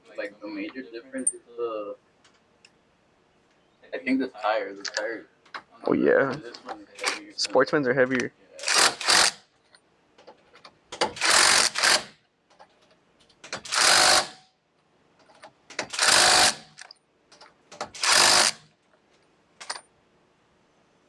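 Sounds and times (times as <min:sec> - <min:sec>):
impact wrench spinning lug nuts: 0:08.6 - 0:09.4, 0:11.1 - 0:12.1, 0:13.6 - 0:14.4, 0:15.8 - 0:16.8, 0:17.8 - 0:18.6.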